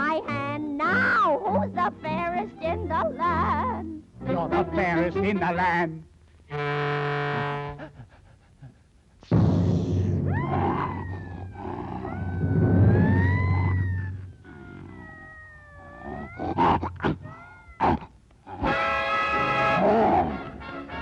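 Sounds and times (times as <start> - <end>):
gliding wail-like tones: 10.3 - 16.4.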